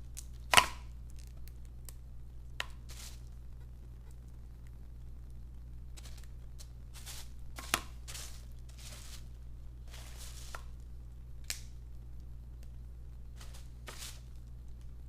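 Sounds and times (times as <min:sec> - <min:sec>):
crab shell cracking by hand: 0:00.0 - 0:03.4, 0:10.6 - 0:12.7.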